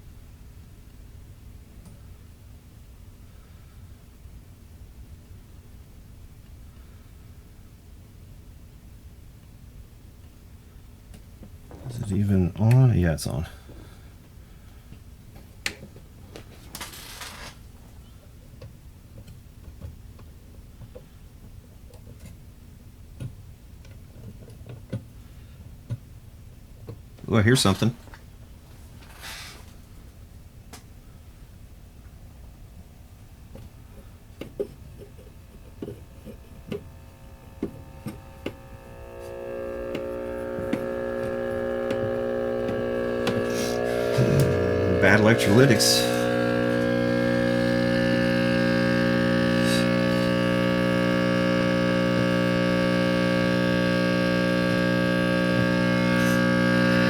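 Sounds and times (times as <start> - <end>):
faint low radio hum: 34.6 - 57.0
short hiss: 35.9 - 51.2.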